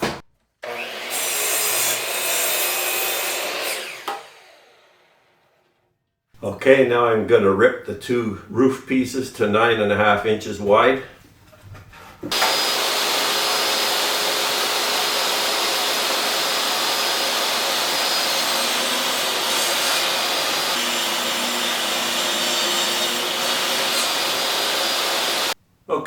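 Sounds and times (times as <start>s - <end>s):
table saw ripping wood: 0.0s - 5.8s, 12.3s - 25.6s.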